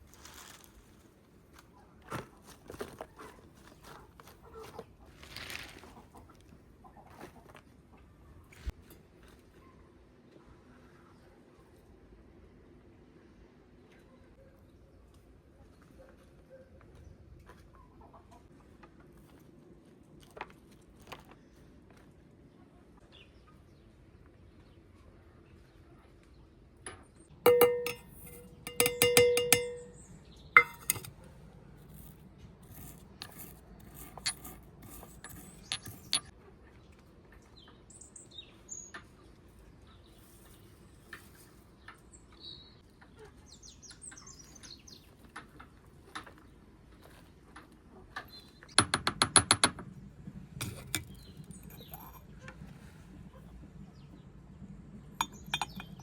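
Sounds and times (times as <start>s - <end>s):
dishes and utensils clattering: 27.5s - 31.1s, 50.6s - 52.4s, 55.2s - 56.0s.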